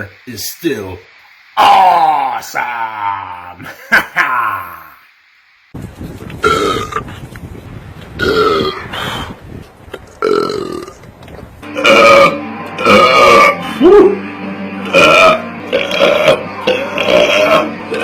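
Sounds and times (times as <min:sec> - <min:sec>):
man belching loudly: 0:06.4 - 0:07.0, 0:08.2 - 0:08.9, 0:10.2 - 0:11.0, 0:11.7 - 0:14.2, 0:14.8 - 0:18.0.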